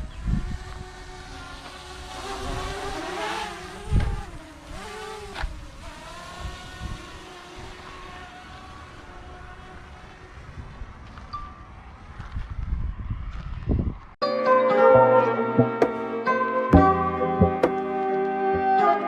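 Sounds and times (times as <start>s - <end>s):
drone propellers whining: 0.0s - 11.0s.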